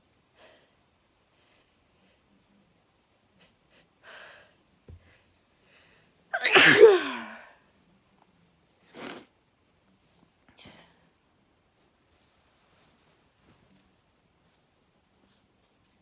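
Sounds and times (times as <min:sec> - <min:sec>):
loud sneeze: 0:06.4 - 0:07.5.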